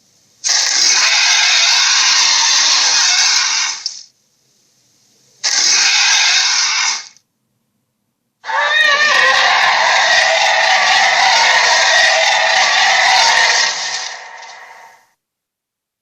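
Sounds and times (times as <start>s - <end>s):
raspy dinosaur roars: 8.4s - 15.0s.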